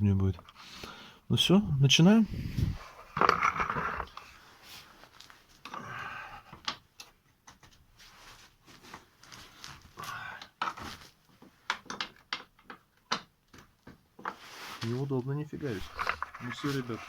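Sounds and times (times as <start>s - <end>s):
heavy breathing: 5.7s - 6.6s.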